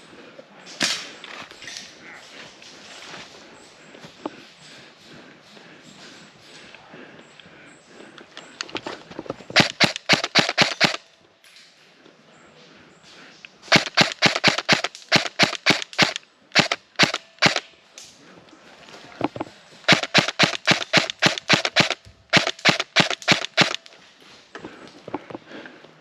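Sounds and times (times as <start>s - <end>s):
airsoft gun rapid firing: 9.6s - 11.0s, 13.7s - 17.6s, 19.9s - 23.9s.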